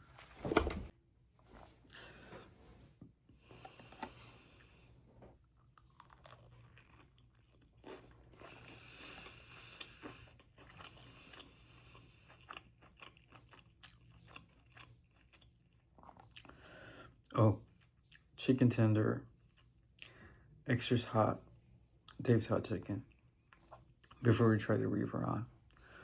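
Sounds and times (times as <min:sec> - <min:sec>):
crunching and chewing food: 0:03.4 - 0:18.4, 0:19.2 - 0:20.6, 0:21.9 - 0:24.4.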